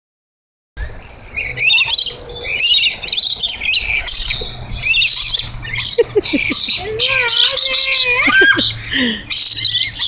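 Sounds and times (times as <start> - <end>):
flock of birds chirping and squawking: 0.8 - 10.0.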